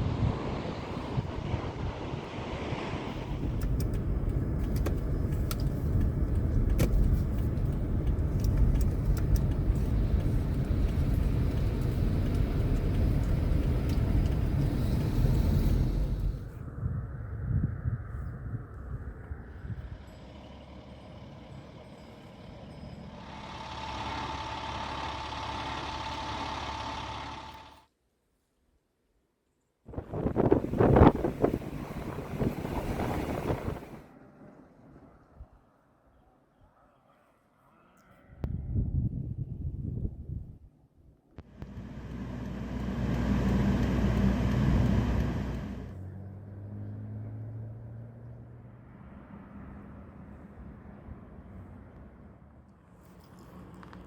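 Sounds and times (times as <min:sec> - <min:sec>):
heavy engine rumbling: 0:00.0 - 0:16.7, 0:19.6 - 0:27.8, 0:41.5 - 0:46.2
steady high whine: 0:41.4 - 0:45.9
vehicle passing close by: 0:41.6 - 0:52.3.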